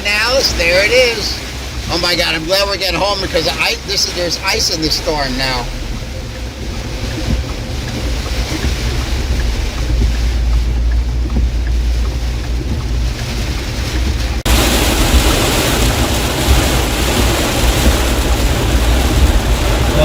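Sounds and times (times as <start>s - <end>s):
rain hissing on car: 0.0s - 20.0s
road and engine rumble: 0.0s - 20.0s.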